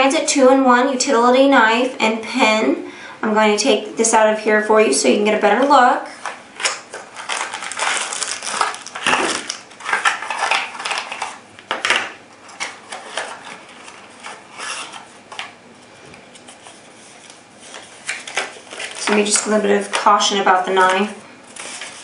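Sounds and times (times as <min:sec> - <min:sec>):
packaging rustling and crackling: 0:06.2 - 0:15.6, 0:16.2 - 0:20.1, 0:20.8 - 0:22.0.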